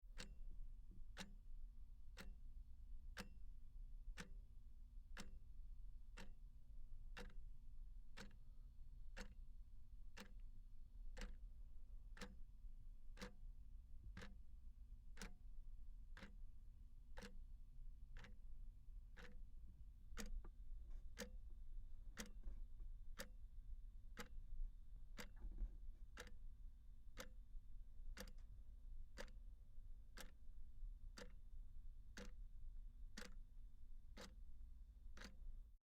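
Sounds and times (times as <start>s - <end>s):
clock ticking: 0.1s - 0.4s, 1.1s - 1.4s, 2.1s - 2.4s, 3.1s - 3.4s, 6.2s - 6.4s, 7.1s - 7.4s, 8.2s - 8.4s, 9.1s - 9.4s, 10.1s - 10.4s, 11.1s - 11.4s, 12.2s - 12.4s, 13.1s - 13.4s, 14.1s - 14.4s, 15.1s - 15.4s, 16.2s - 16.4s, 17.1s - 17.4s, 18.1s - 18.4s, 19.2s - 19.5s, 20.1s - 20.5s, 21.1s - 21.3s, 22.1s - 22.5s, 23.1s - 23.4s, 24.2s - 24.4s, 25.2s - 25.5s, 26.2s - 26.4s, 27.1s - 27.4s, 28.1s - 28.5s, 29.1s - 29.4s, 30.2s - 30.4s, 31.2s - 31.5s, 32.1s - 32.5s, 33.2s - 33.5s, 34.1s - 34.5s, 35.2s - 35.4s.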